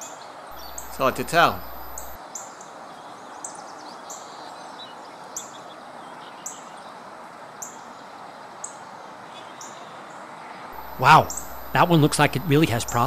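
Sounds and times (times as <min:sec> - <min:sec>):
bird chirping: 0:00.5 - 0:02.2, 0:10.8 - 0:13.0
steady background hiss: 0:00.5 - 0:02.2, 0:10.8 - 0:13.0.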